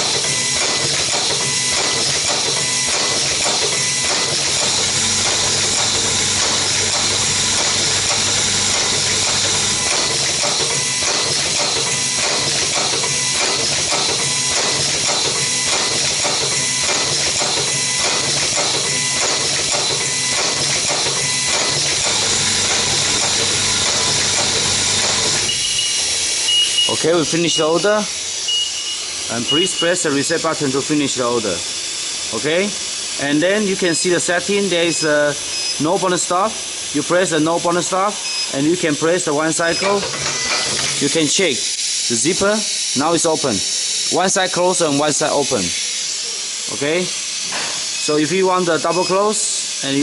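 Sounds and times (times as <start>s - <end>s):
pneumatic machine clicks and knocks: 0.0s - 26.7s, 39.7s - 41.2s.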